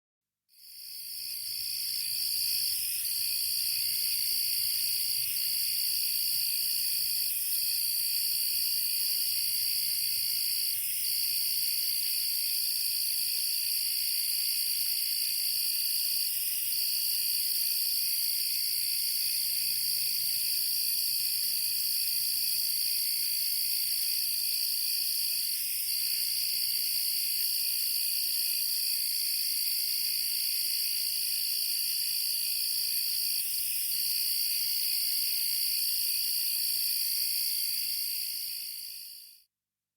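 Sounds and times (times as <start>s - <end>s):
high hiss of insect song: 0.6s - 39.4s
fainter lower insect trills: 0.7s - 19.4s
loud high insect trill: 0.8s - 19.4s.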